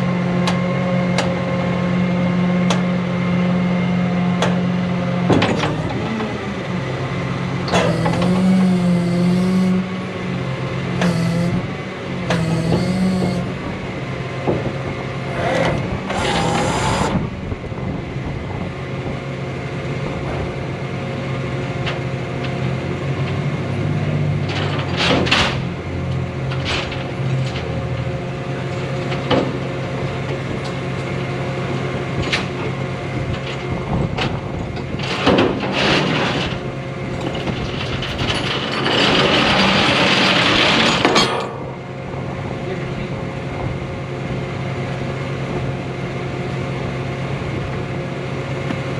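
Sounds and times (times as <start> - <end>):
truck engine running: 5.5 - 23.0.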